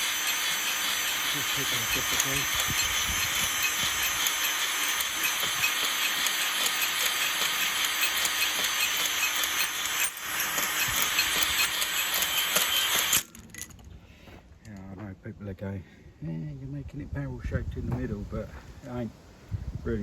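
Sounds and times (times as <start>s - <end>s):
power drill spinning cylinder hone: 0.0s - 13.4s.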